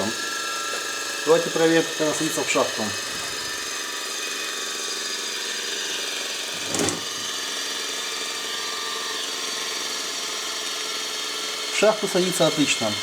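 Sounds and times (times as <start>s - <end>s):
bench grinder humming: 1.8s - 4.0s, 6.5s - 7.4s.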